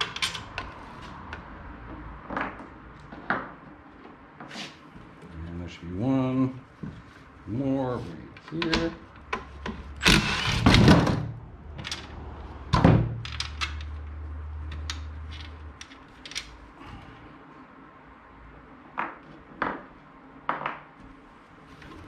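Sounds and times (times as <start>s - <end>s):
clunks of parts and tools: 8.4s - 14.0s.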